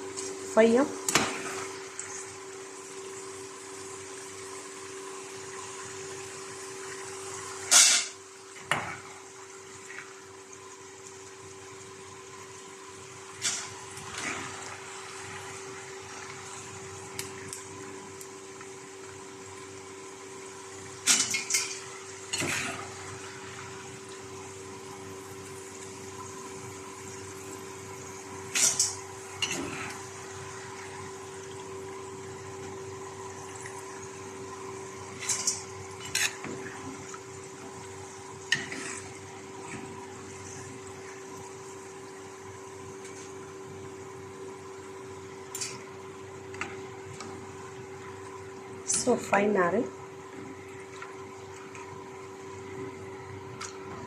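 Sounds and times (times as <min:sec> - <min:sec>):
chips sizzling in hot oil: 0:00.0 - 0:54.0
metal utensil scraping pan: 0:07.7 - 0:08.2, 0:35.2 - 0:36.5.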